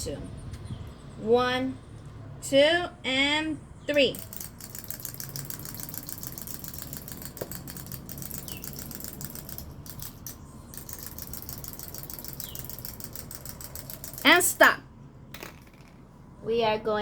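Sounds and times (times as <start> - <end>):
clockwork toy motor clicking: 4.0 - 14.7.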